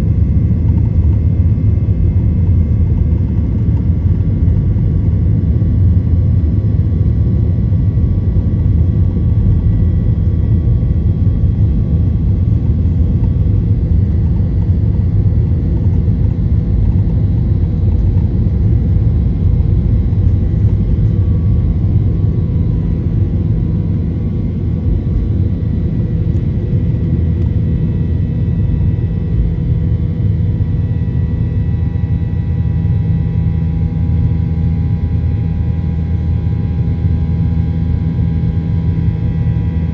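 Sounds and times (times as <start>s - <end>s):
jet engine cabin rumble: 0.0s - 39.9s
faint whining tones: 6.7s - 36.3s.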